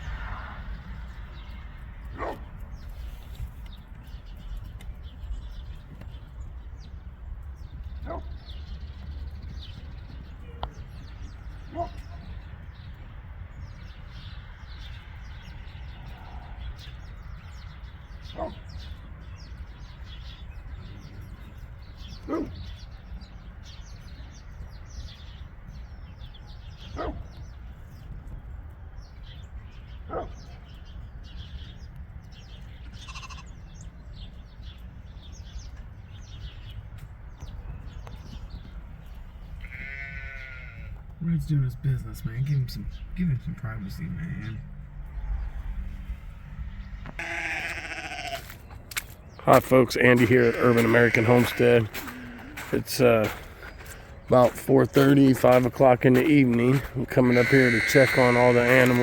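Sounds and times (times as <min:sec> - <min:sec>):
faint birds chirping: 0:00.0 - 0:59.0
dog barking: 0:02.1 - 0:02.5, 0:08.0 - 0:08.4, 0:11.7 - 0:12.2, 0:18.3 - 0:18.7, 0:22.2 - 0:22.6, 0:26.9 - 0:27.3, 0:30.1 - 0:30.6
low rumble: 0:41.8 - 0:47.2.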